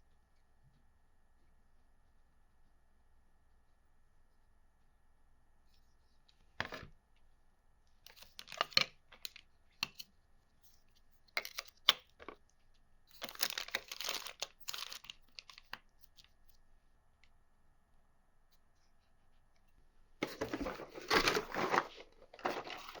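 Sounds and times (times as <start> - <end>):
wrapping crinkling and tearing: 13.1 - 15.7, 20.2 - 23.0.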